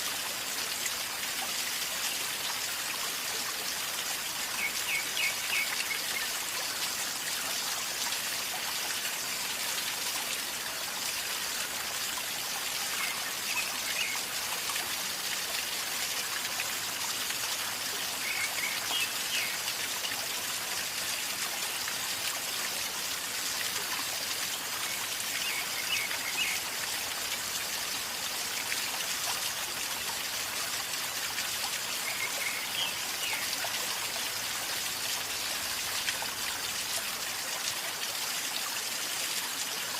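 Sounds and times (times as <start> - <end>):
river gurgling over stones: 0.0 - 39.9.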